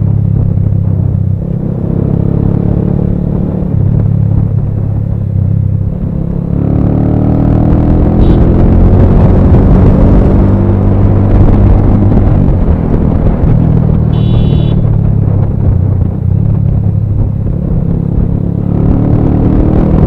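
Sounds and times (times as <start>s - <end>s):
motorcycle engine running: 0.0s - 20.0s
wind rumble on microphone: 0.0s - 20.0s
short high beep: 14.2s - 14.8s.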